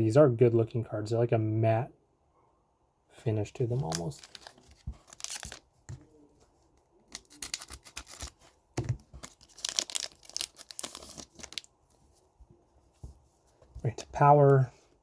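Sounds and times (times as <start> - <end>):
card pack wrapper ripping: 3.7 - 5.6, 7.1 - 11.7.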